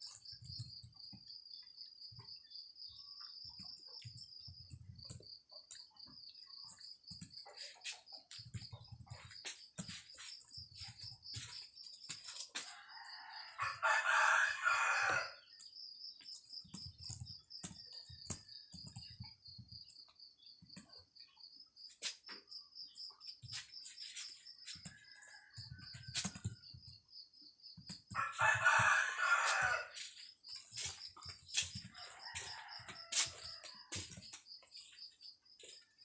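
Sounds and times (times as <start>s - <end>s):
rooster crowing: 12.6s - 15.5s, 24.7s - 26.4s, 28.2s - 30.1s, 31.9s - 34.2s.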